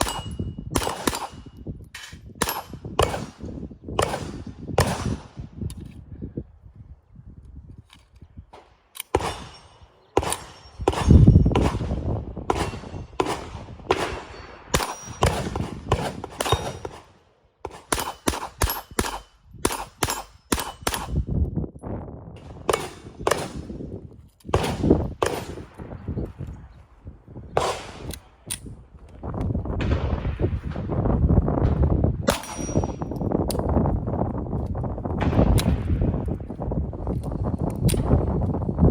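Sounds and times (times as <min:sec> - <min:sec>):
pistol shots: 0:00.0 - 0:01.5, 0:02.4 - 0:05.5, 0:08.6 - 0:21.2, 0:22.4 - 0:23.8, 0:24.5 - 0:26.0, 0:27.6 - 0:28.5, 0:29.8 - 0:33.2.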